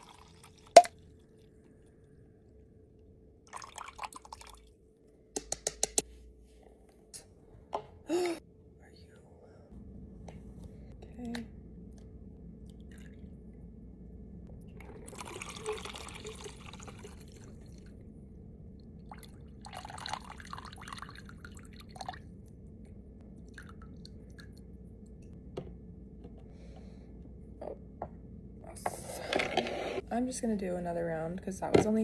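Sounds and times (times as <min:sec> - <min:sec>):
liquid pouring: 0:00.0 - 0:01.2, 0:03.5 - 0:04.8, 0:12.7 - 0:13.3, 0:14.8 - 0:17.9, 0:19.0 - 0:22.4, 0:23.4 - 0:24.7
steady low hum: 0:06.0 - 0:32.0.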